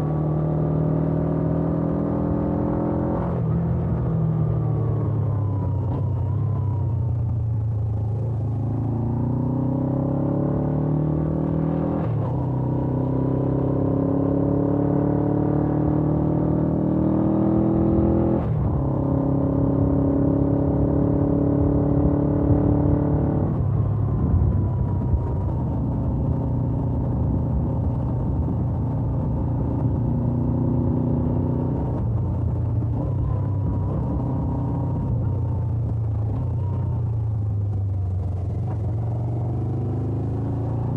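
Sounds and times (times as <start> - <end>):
motorcycle engine accelerating: 0.0 - 40.9
rush of wind: 17.2 - 40.9.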